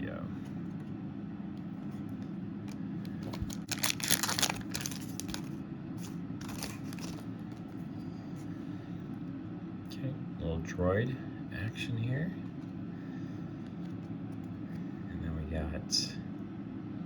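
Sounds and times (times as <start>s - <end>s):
foil wrapper crinkling and tearing: 3.1s - 5.6s, 6.4s - 7.3s.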